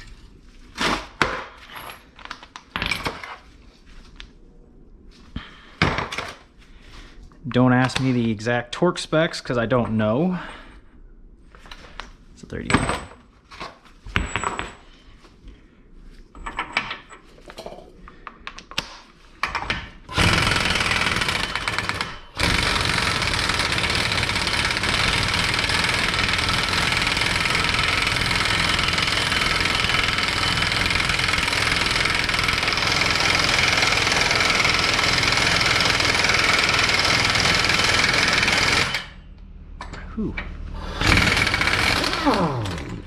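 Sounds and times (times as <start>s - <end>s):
impact wrench hammering: 41.0s - 43.0s.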